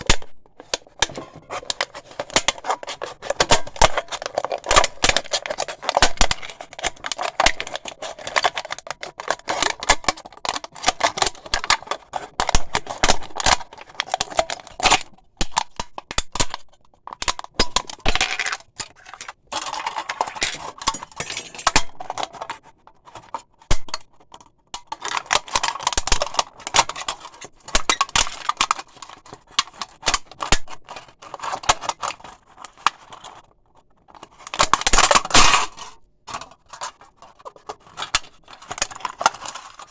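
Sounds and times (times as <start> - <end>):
razor blade cutting aluminium cans: 0.0 - 11.8.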